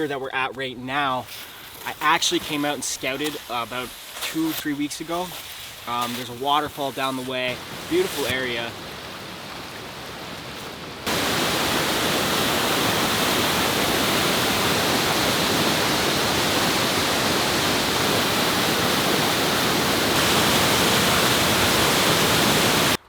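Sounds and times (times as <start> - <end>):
waterfall rushing: 5.3 - 23.0.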